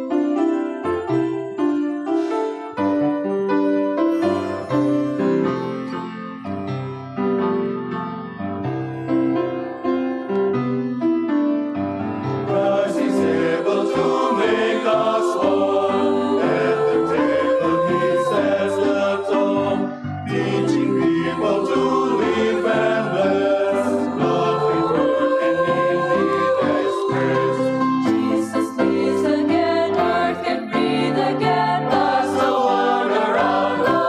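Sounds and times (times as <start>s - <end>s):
piano accompaniment: 0.0s - 34.0s
choir singing a hymn: 12.4s - 34.0s.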